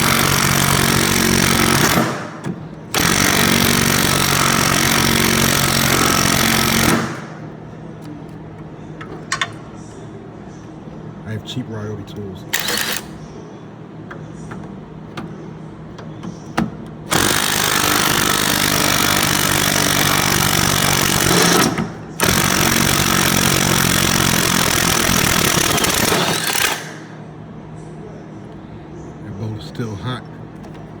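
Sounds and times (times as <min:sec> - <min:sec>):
impact wrench hammering on bolt: 0:00.0 - 0:07.4, 0:16.6 - 0:27.1.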